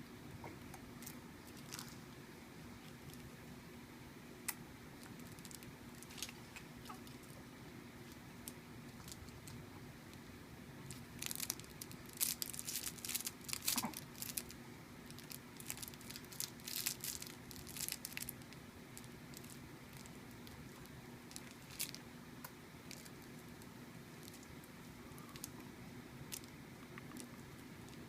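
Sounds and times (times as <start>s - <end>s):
play mat crinkling and rustling: 1.0s - 2.1s, 5.1s - 7.3s, 10.9s - 22.0s, 22.9s - 24.5s, 26.3s - 26.5s.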